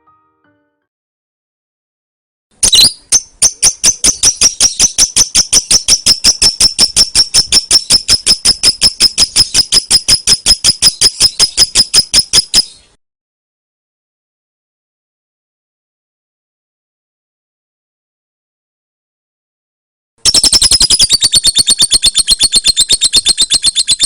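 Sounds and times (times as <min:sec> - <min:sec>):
bird ticking chirps: 0:02.6 - 0:12.9, 0:20.3 - 0:24.0.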